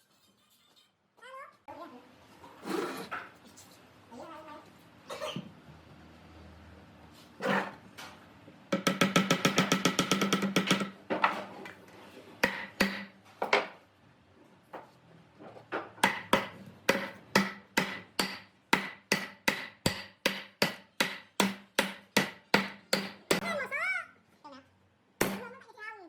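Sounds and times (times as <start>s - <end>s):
hammer blows ringing: 16.0s - 23.4s.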